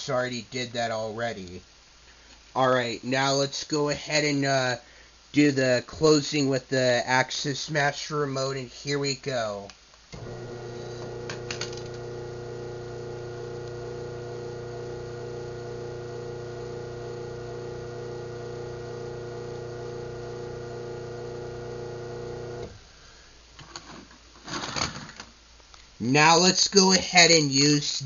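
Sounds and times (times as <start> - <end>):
garage door opener motor hum: 10.2 - 22.8.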